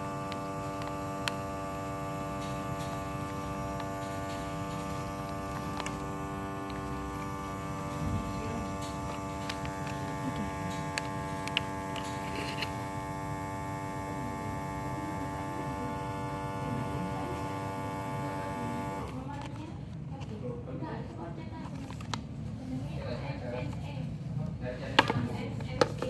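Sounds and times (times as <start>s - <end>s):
vacuum sealer pump humming: 0.0s - 19.5s
clicks and rustles of handling: 21.5s - 22.3s.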